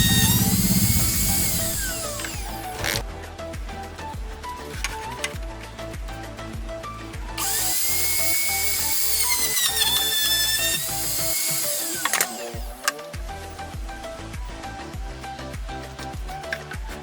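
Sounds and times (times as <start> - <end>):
power tool motor whining: 0.0 - 3.0, 7.4 - 13.1
background music: 0.0 - 17.0.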